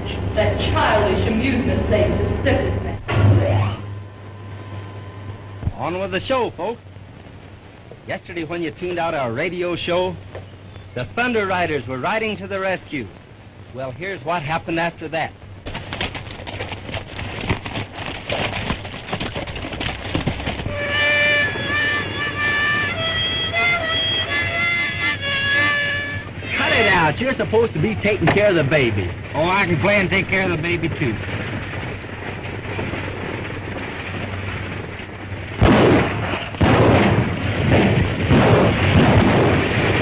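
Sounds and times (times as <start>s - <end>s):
film soundtrack hiss and hum: 0.0s - 40.0s
rumbling noise: 0.0s - 40.0s
horses galloping hoofbeats: 14.0s - 36.6s
fiddle music: 20.7s - 27.4s
gunshots: 35.6s - 40.0s.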